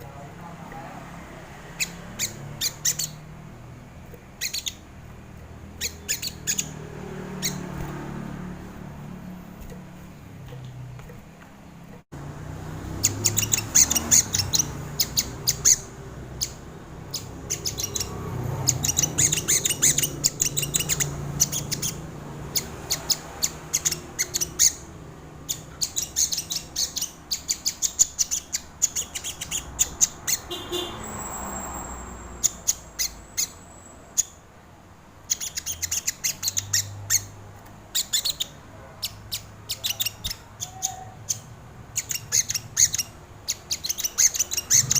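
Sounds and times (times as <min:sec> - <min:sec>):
bird chirping in fast trills: 0:00.0 - 0:12.0, 0:12.6 - 0:34.5, 0:35.2 - 0:44.9.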